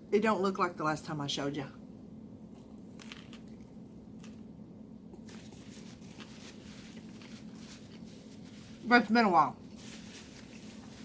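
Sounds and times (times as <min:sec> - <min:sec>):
steady low hum: 0:00.0 - 0:11.0
chewing and wet mouth sounds: 0:02.4 - 0:04.5, 0:05.1 - 0:08.4.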